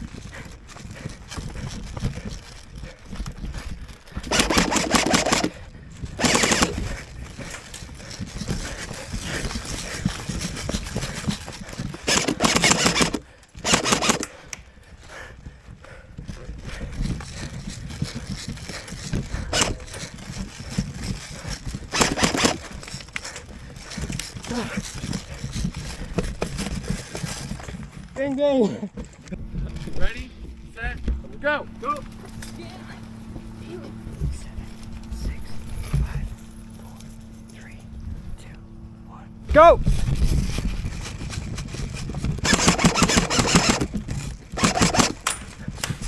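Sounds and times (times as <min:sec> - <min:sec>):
airsoft guns firing bursts: 0:04.2 - 0:05.6, 0:06.2 - 0:07.0, 0:12.0 - 0:14.4, 0:19.5 - 0:20.0, 0:21.9 - 0:22.7, 0:42.4 - 0:45.4.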